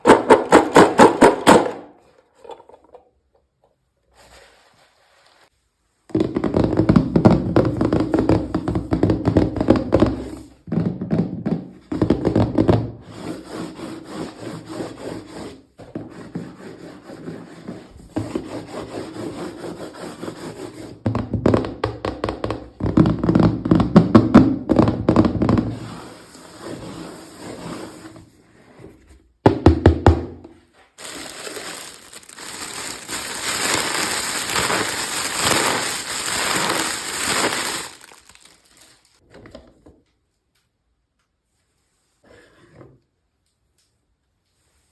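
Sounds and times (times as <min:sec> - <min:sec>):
packaging clicks taps and rustles: 0:31.0 - 0:39.0.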